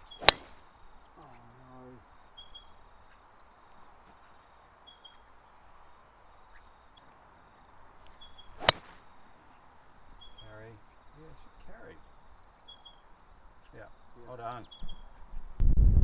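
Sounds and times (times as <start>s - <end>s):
bird chirping: 0.0s - 15.5s
faint outdoor background: 0.0s - 16.0s
golf club striking ball: 0.1s - 0.6s, 8.6s - 9.1s.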